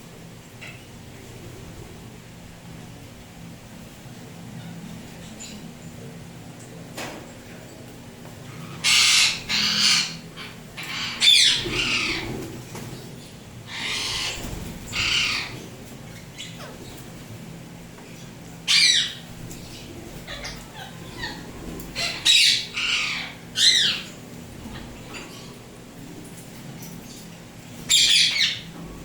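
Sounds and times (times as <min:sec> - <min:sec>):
parrot squawking: 0:08.6 - 0:12.3, 0:13.7 - 0:15.6, 0:18.7 - 0:19.2, 0:20.1 - 0:24.1, 0:27.9 - 0:28.7.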